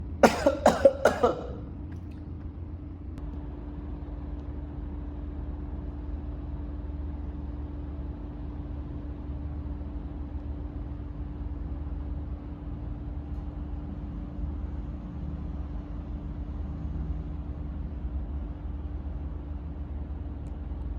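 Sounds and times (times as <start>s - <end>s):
faint hum: 0.0s - 20.9s
person coughing: 0.2s - 1.6s.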